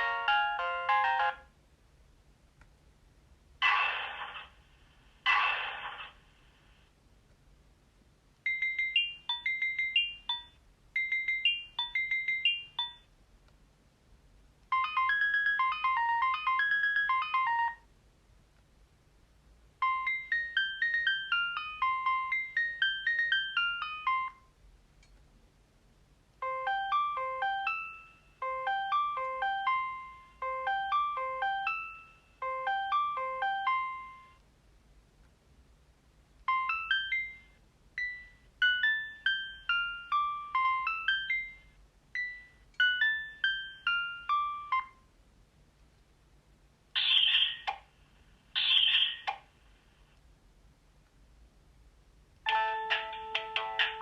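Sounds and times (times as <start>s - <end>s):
mobile phone ringtone melodies: 0.0s - 1.5s, 8.5s - 13.1s, 14.7s - 17.9s, 19.8s - 24.4s, 26.4s - 34.4s, 36.5s - 45.0s, 52.5s - 54.0s.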